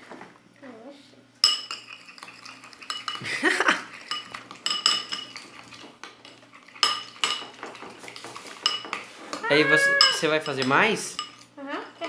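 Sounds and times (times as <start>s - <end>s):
utensil clinking in bowl: 1.4s - 3.3s, 4.0s - 9.0s, 9.9s - 12.0s.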